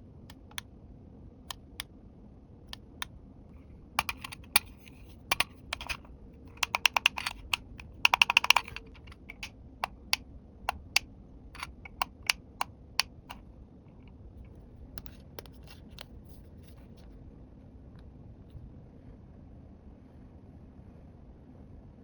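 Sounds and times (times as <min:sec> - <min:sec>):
plastic toy pieces clicking: 0:04.0 - 0:11.0, 0:11.6 - 0:12.4.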